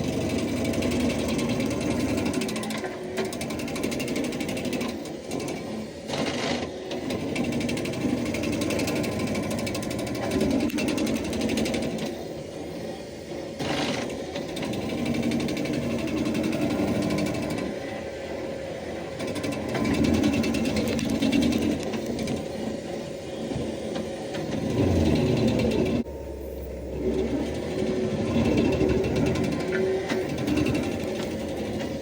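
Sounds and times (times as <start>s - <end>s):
stump grinder wheel chattering: 0.0s - 12.2s, 13.6s - 17.6s, 19.2s - 22.5s, 24.4s - 26.1s, 26.8s - 32.0s
engine under load: 0.0s - 32.0s.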